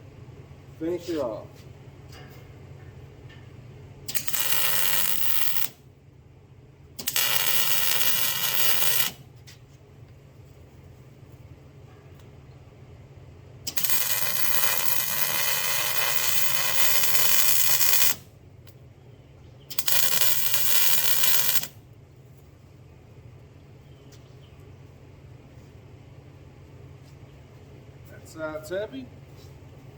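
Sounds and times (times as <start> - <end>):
low steady hum: 0.0 - 29.9
welding arc crackling: 4.0 - 5.8, 7.0 - 9.2, 13.6 - 18.3, 19.7 - 21.8.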